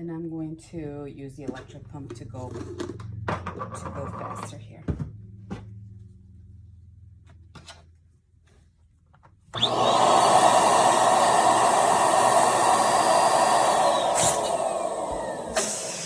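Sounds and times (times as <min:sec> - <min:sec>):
electric balloon pump running: 0:09.6 - 0:16.0.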